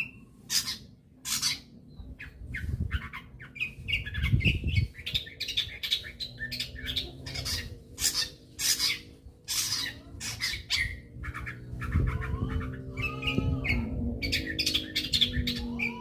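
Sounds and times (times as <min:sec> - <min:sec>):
bird squawking calls: 0:05.1 - 0:16.0.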